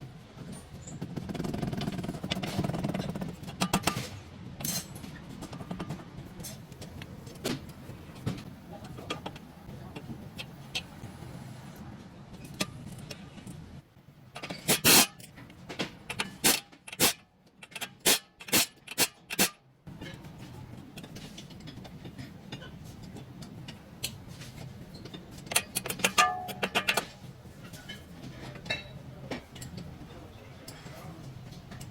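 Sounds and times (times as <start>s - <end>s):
hand tools clanking on metal: 25.0s - 29.8s.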